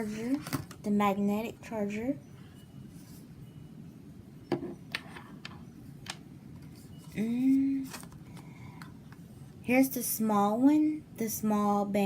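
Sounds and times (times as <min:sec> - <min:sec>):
woman humming: 0:07.1 - 0:07.9.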